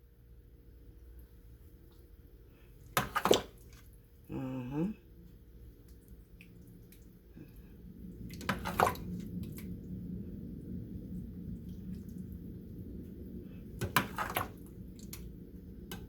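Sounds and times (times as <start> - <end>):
person humming: 4.3 - 5.1.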